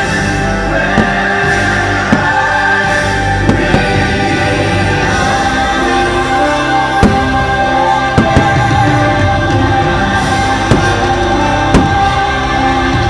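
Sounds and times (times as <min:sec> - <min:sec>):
music with choir singing: 0:00.0 - 0:13.0
firework bursts banging: 0:01.0 - 0:04.4, 0:07.0 - 0:09.0, 0:10.1 - 0:12.3.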